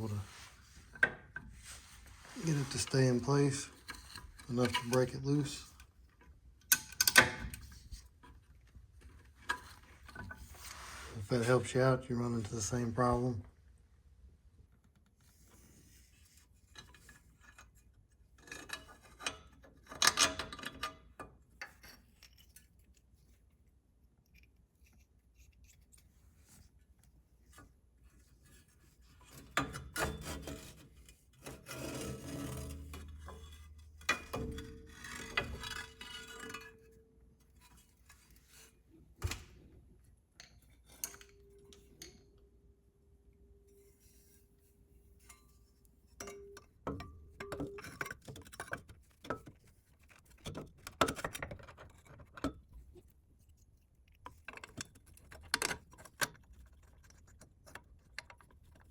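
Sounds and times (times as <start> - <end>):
metal parts and tools clinking: 46.2 - 52.6.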